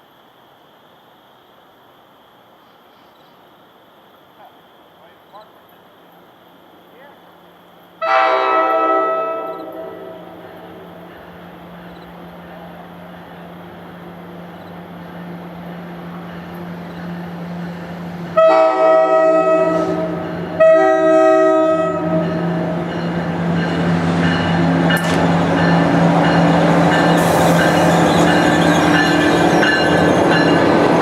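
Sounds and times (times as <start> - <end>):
train engine hum: 0.0 - 31.0
train air horn blasts: 8.0 - 10.8, 18.3 - 22.8
wheels rumbling on rails: 9.5 - 31.0.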